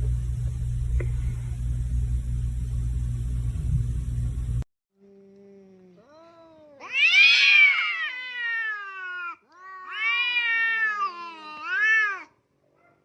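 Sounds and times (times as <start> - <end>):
cat yowling: 6.0 - 12.4.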